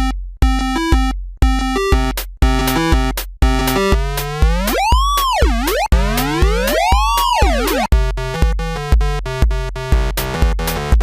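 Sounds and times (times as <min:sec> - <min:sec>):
upbeat synthesizer music: 0:03.6 - 0:07.9.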